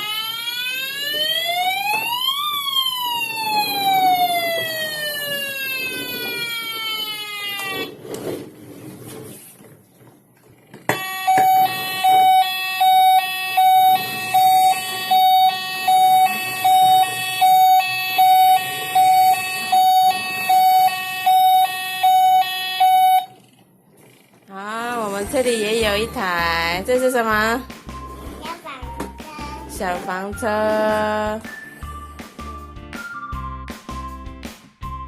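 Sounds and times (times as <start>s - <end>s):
toy two-tone siren: 0.0s - 8.0s, 10.9s - 23.4s.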